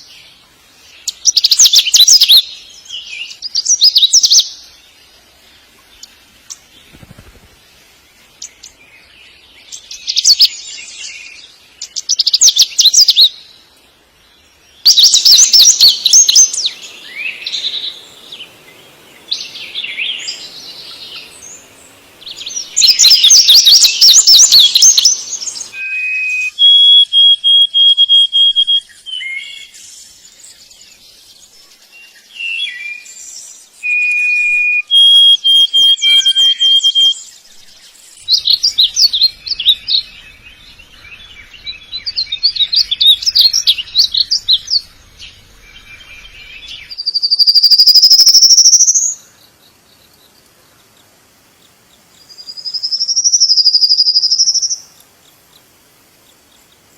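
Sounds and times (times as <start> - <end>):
songbird trilling and whistling: 1.0 - 4.6, 14.8 - 18.4, 19.3 - 29.7, 32.4 - 37.6, 38.2 - 49.2, 52.3 - 54.9.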